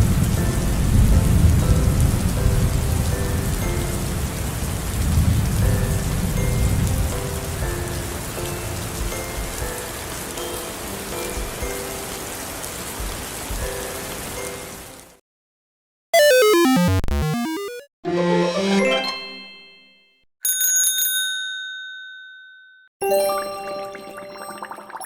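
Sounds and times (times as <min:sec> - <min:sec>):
low thunder rumble: 0:00.0 - 0:07.1
steady rain: 0:00.0 - 0:15.2.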